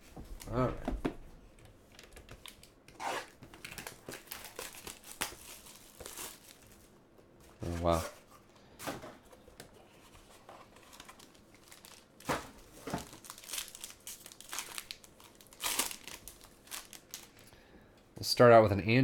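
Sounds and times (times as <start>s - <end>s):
wrapper tearing and crinkling: 2.4s - 6.9s, 10.8s - 17.4s.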